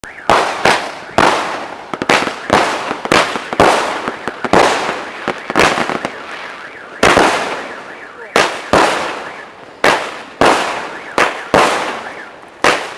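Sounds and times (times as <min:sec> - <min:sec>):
fireworks bangs: 0:00.0 - 0:12.9.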